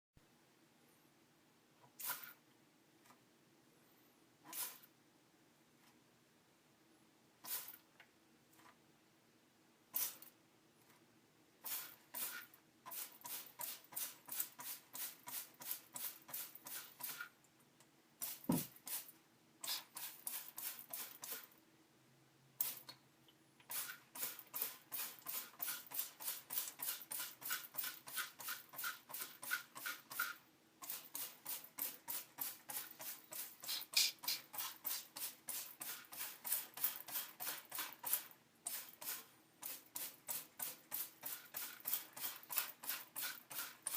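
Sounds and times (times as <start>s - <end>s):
spray bottle spritzing: 2.0s - 2.4s, 4.5s - 4.9s, 7.4s - 7.8s, 9.9s - 10.3s, 11.6s - 17.3s, 22.6s - 23.0s, 23.7s - 43.9s.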